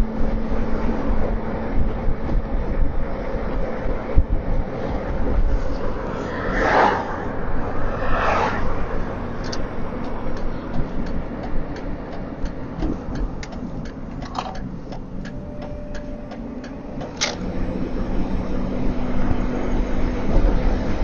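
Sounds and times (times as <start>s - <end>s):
low vehicle rumble: 0.0s - 21.0s.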